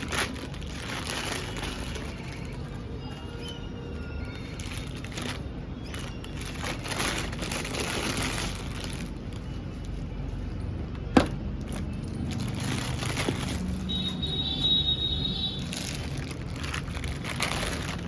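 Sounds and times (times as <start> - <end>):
balloon packaging crinkling: 0.0 - 10.1, 11.6 - 18.0.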